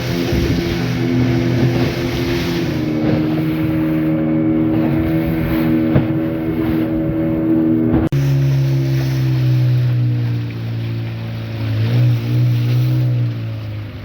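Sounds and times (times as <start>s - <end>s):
wind noise: 0.0s - 10.4s
motorboat engine running: 0.0s - 14.0s
rushing water: 0.0s - 14.0s.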